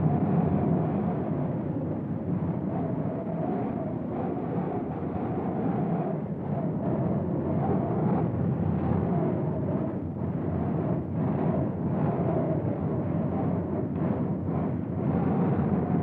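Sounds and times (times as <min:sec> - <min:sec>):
faint wavering wind howl: 0:00.0 - 0:16.0
gusting storm wind: 0:00.0 - 0:16.0.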